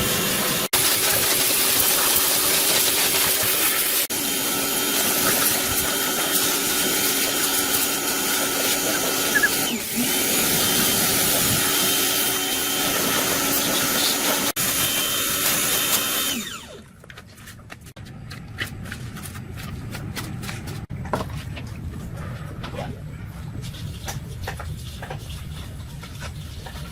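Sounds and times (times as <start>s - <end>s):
electric power tool running: 0.0s - 16.9s.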